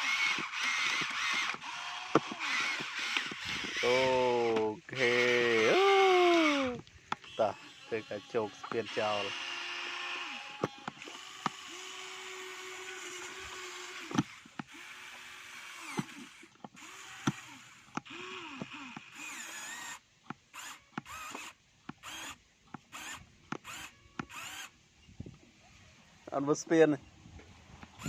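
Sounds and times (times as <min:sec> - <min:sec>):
small motor whirring: 0:00.0 - 0:24.8, 0:27.5 - 0:28.0
sharp clicks and knocks: 0:14.1 - 0:14.7.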